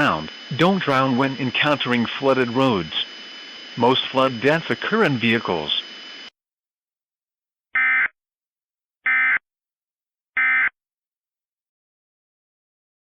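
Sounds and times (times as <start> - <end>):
buzzing digital data bursts: 0.0 - 6.3.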